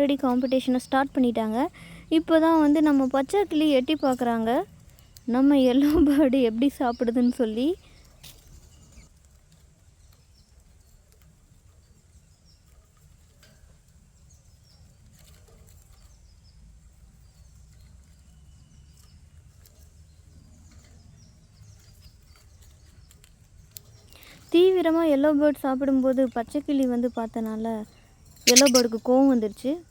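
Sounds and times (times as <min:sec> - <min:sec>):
budgerigars chirping: 0:28.5 - 0:29.1.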